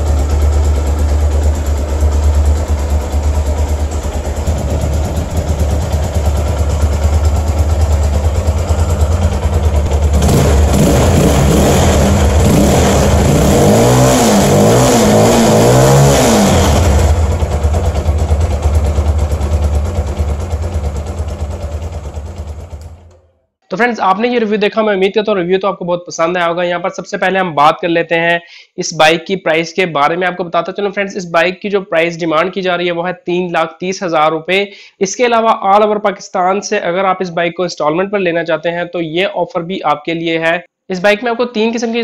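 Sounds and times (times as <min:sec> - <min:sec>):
motorcycle engine idling and revving: 0:00.0 - 0:23.2.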